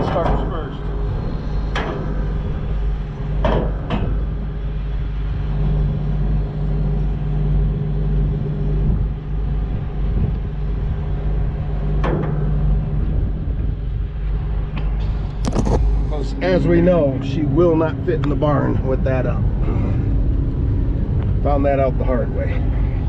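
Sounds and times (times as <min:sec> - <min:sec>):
combine engine running: 0:00.0 - 0:23.0
sharp mechanical clunks: 0:03.2 - 0:04.5.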